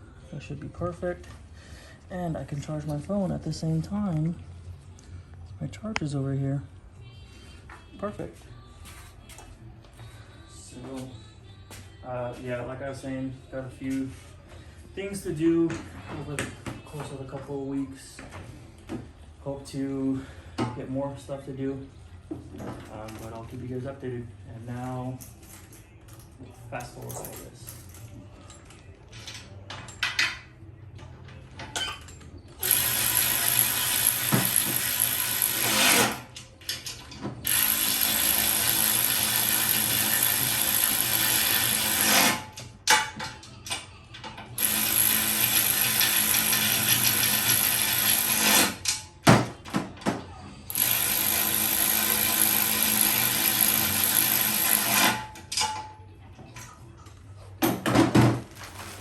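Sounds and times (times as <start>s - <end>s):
electric power tool running: 32.6s - 36.3s, 37.5s - 42.4s, 44.6s - 48.8s, 50.7s - 55.2s.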